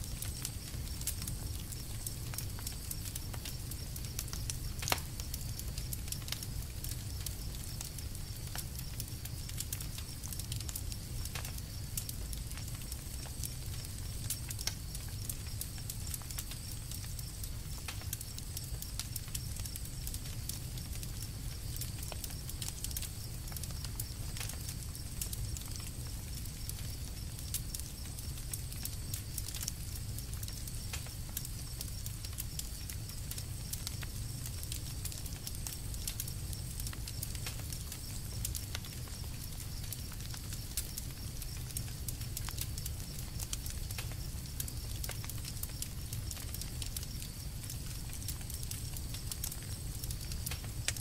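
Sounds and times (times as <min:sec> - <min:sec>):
campfire crackling: 0:00.0 - 0:51.0.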